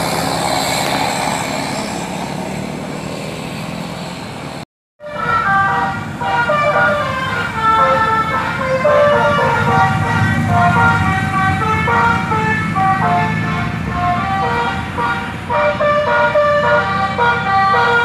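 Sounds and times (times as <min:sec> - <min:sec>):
musical air horn playing tune: 0:05.0 - 0:18.0.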